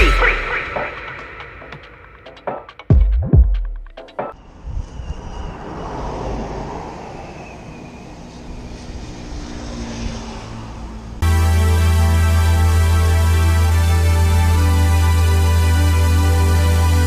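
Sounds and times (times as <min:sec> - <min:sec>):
rushing air: 0:04.4 - 0:11.2.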